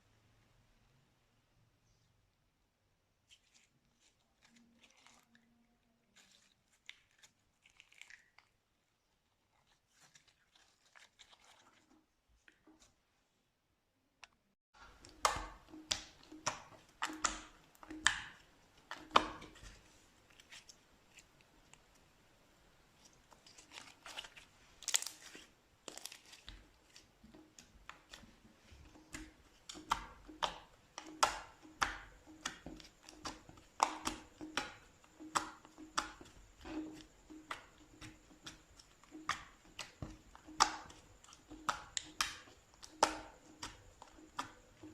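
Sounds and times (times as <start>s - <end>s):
slime popping and clicking: 15.0s - 19.6s.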